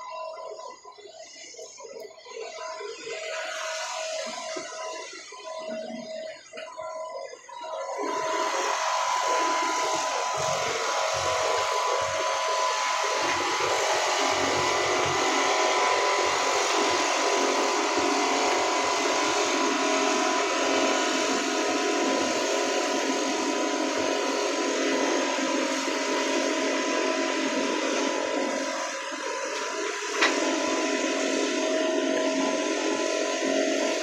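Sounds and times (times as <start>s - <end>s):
power tool motor whining: 1.4s - 34.0s.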